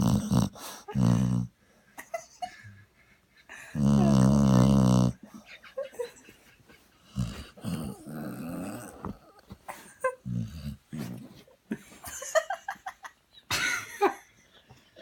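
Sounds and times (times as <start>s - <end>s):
dog snoring: 0.0s - 1.5s, 3.7s - 5.2s, 7.1s - 9.4s, 10.2s - 11.3s
dog sleep noises: 0.0s - 1.6s, 3.7s - 12.2s.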